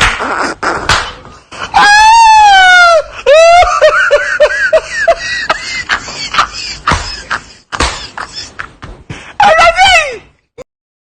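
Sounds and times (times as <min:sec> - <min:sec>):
person giggling: 0:03.0 - 0:09.2.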